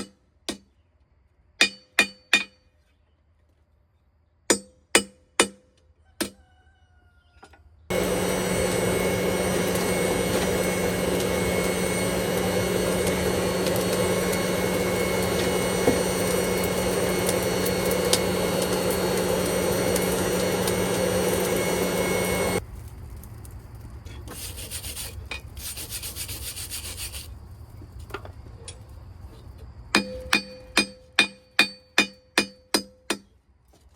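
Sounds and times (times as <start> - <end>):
electric grinder running: 7.9 - 22.6.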